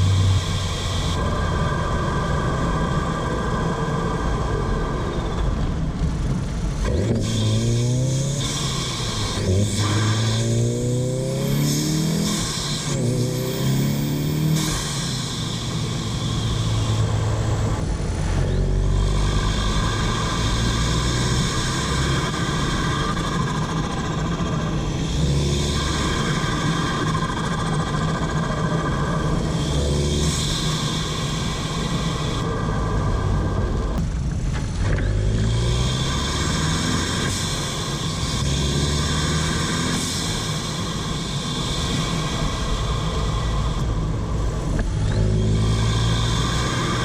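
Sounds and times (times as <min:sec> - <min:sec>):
car engine revving: 0:00.0 - 0:47.0
high turbo whine: 0:00.0 - 0:47.0.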